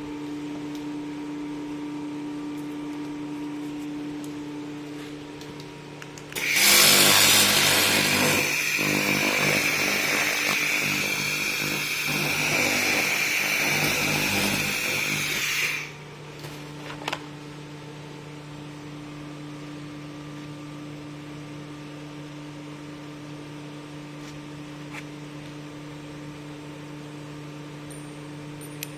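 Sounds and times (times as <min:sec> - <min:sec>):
machine humming: 0:00.0 - 0:16.6
laser beam crackling hiss: 0:06.4 - 0:15.9.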